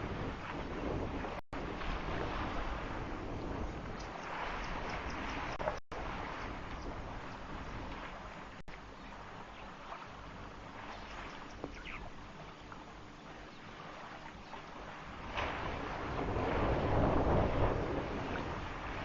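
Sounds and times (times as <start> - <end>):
wind noise: 0.0 - 12.2, 13.7 - 19.0
faint bird chirps: 11.3 - 12.1.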